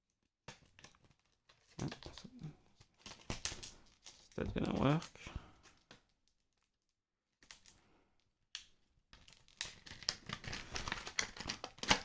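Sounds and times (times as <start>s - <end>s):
scissors snipping packaging: 8.6s - 12.0s.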